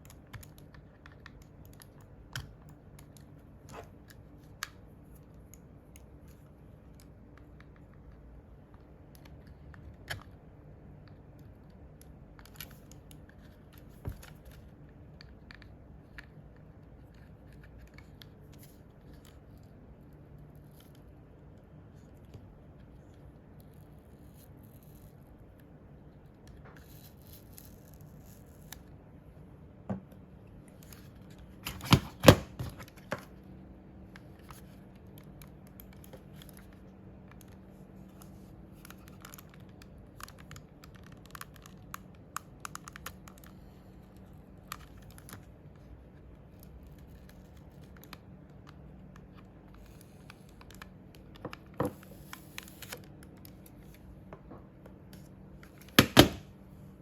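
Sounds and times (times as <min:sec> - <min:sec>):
computer mouse clicks and taps: 0:38.2 - 0:43.6.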